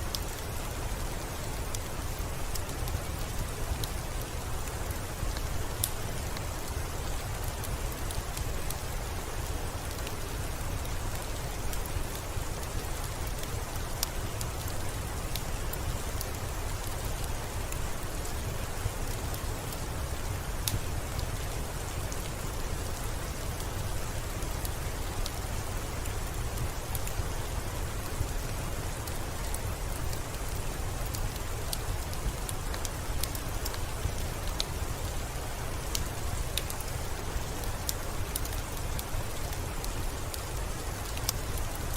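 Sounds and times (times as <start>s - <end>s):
fireplace crackling: 0.0s - 41.9s
steady rain: 0.0s - 41.9s
faint sharp clicks: 41.0s - 41.4s.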